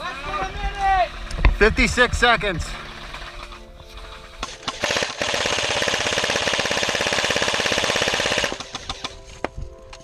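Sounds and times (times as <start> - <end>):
airsoft gun full-auto burst: 4.7 - 8.9.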